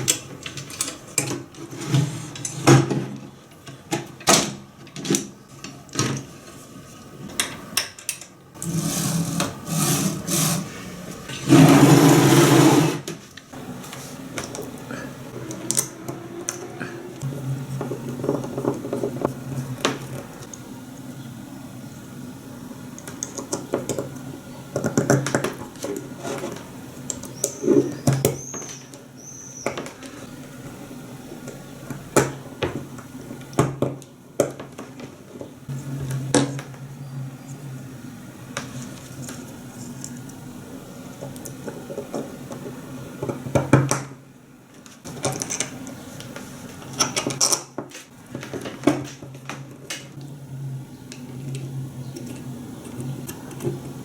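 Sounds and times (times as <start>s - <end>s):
steady low hum: 1.9s - 28.3s, 35.2s - 47.0s, 49.5s - 54.0s.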